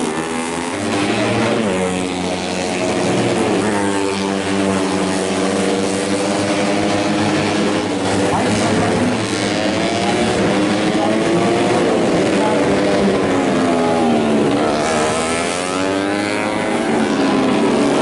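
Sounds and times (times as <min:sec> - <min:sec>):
racing motorcycles revving: 0:00.0 - 0:18.0.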